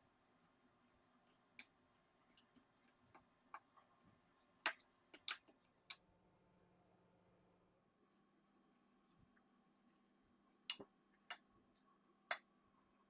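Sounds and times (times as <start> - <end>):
faint clicks and light taps: 0.4 - 6.0.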